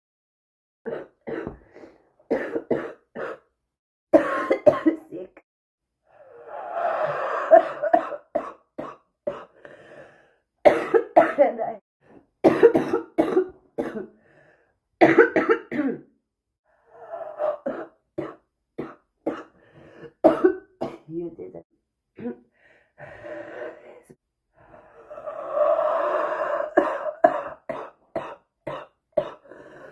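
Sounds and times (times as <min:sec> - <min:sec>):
person coughing: 0:00.9 - 0:03.5, 0:04.2 - 0:05.2, 0:07.5 - 0:09.6, 0:10.7 - 0:11.7, 0:12.4 - 0:14.2, 0:15.0 - 0:16.1, 0:17.6 - 0:19.6, 0:20.2 - 0:21.1, 0:26.4 - 0:29.9.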